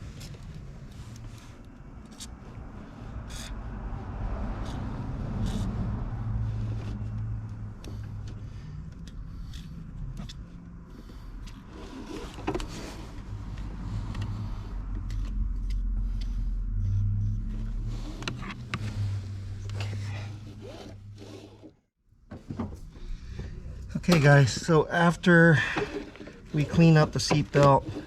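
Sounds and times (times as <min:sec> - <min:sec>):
rubbing of seat belt webbing: 0:04.6 - 0:21.8, 0:24.1 - 0:28.0
steady low hum: 0:22.6 - 0:28.0.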